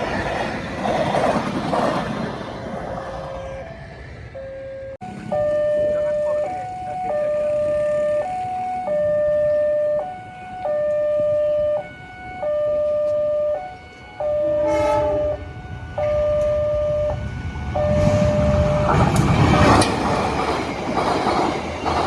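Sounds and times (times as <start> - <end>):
train rumble: 0.0 - 22.0
level-crossing two-tone alarm: 3.4 - 19.1
train horn blast: 12.9 - 19.8.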